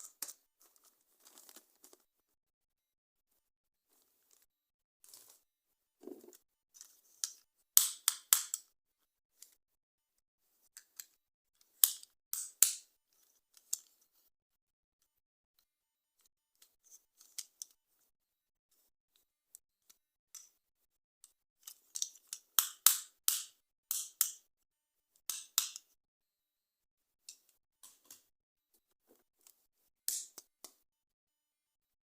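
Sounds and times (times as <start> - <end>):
packaging rustling and clicking: 0.2 - 2.0.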